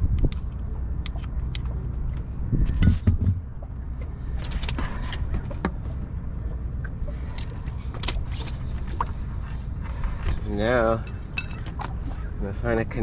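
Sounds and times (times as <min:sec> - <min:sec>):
steady low rumble: 0:00.0 - 0:13.0.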